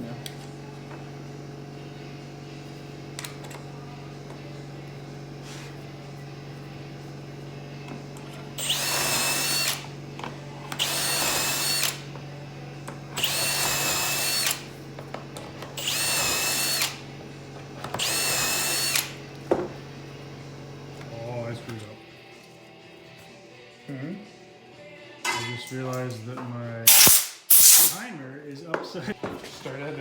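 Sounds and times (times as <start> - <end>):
power drill whining: 7.8 - 21.2.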